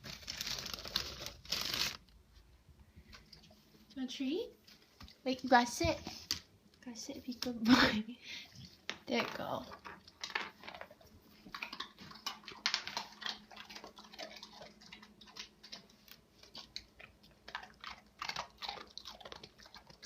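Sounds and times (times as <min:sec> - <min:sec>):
dog crunching a treat: 0:09.7 - 0:20.0.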